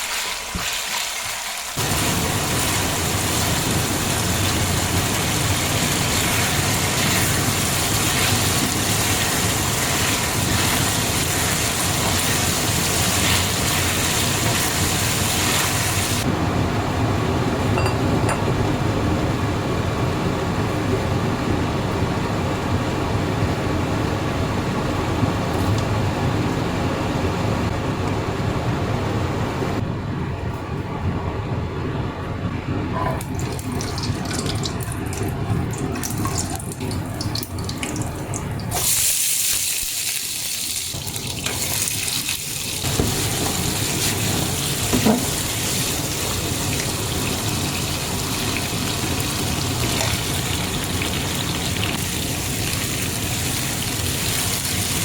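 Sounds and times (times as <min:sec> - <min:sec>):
running water into a sink: 0:33.2 - 0:55.0.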